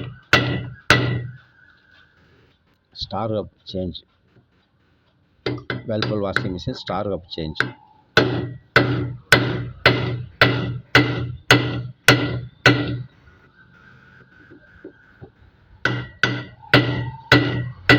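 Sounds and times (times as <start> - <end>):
sharp ringing knocks: 0.0 - 1.6, 5.4 - 6.8, 7.6 - 13.2, 15.8 - 17.9.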